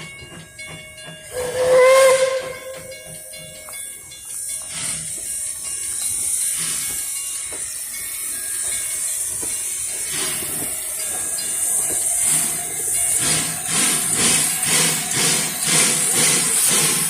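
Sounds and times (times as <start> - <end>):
steam locomotive hissing: 0.4 - 17.0.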